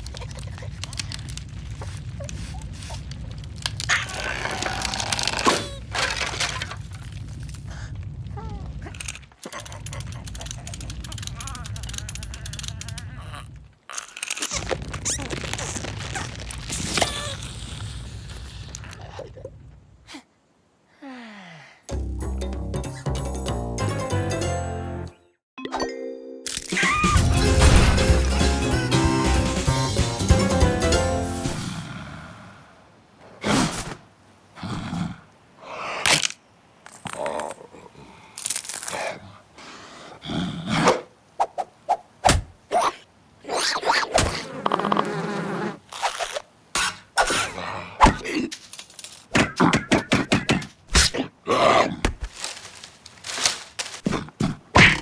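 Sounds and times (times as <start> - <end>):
cartoon crunches and clicks: 8.8 - 19.1, 26.4 - 30.3
sharp hit: 27.0 - 30.6.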